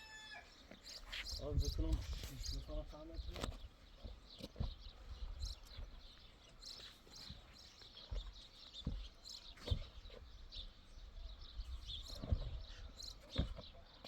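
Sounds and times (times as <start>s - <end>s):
small birds chirping: 0.0s - 14.0s
dull low thuds: 3.2s - 6.2s, 8.0s - 10.4s, 11.6s - 13.8s.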